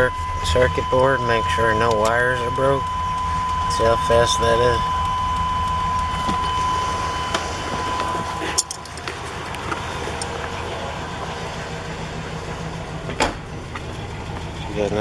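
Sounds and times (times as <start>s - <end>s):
high-pitched tone: 0.0s - 9.0s
pickup truck idling: 0.0s - 15.0s
click: 1.8s - 3.9s.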